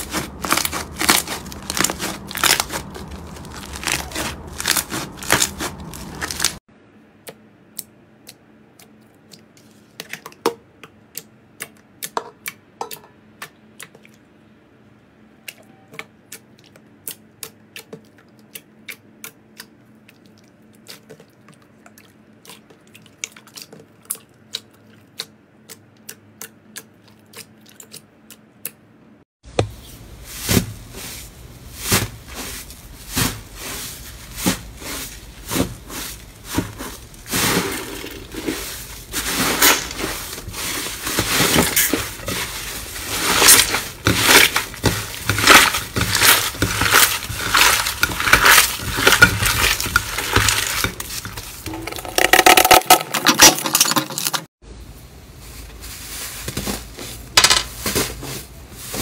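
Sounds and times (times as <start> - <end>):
crunchy slime crackling: 0.0 - 6.6, 31.6 - 53.9.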